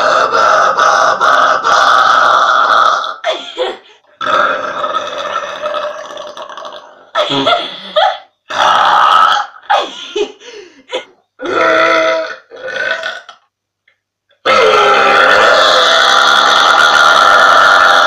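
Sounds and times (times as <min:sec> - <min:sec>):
woman burping: 0:02.9 - 0:10.3, 0:10.9 - 0:13.4.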